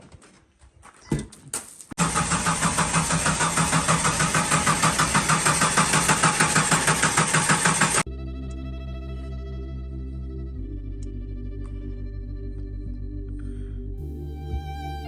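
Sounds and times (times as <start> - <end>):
car engine cranking: 2.0 - 8.1.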